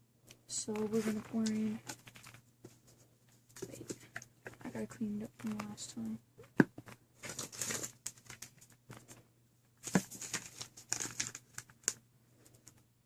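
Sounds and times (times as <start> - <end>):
rustling and scrubbing: 0.7 - 4.8.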